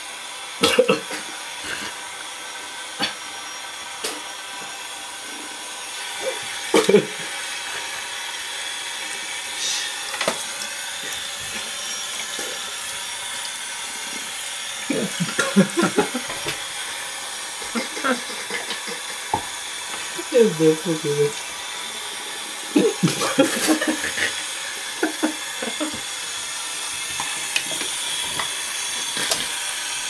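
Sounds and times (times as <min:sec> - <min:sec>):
man hiccuping: 0:00.6 - 0:01.3, 0:06.2 - 0:07.2, 0:14.9 - 0:16.2.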